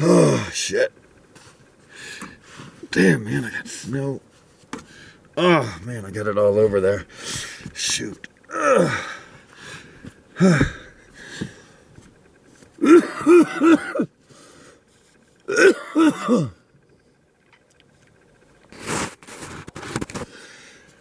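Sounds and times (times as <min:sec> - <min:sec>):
man coughing: 0:12.8 - 0:14.1, 0:15.5 - 0:16.6.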